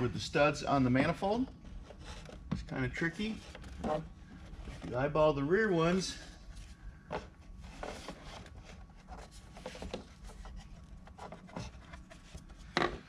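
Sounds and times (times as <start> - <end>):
plastic cover scraping and knocking: 1.0 - 5.0.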